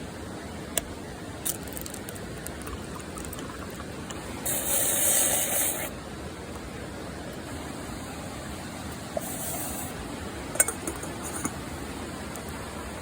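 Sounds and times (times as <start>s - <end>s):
loud high hiss: 4.3s - 6.0s.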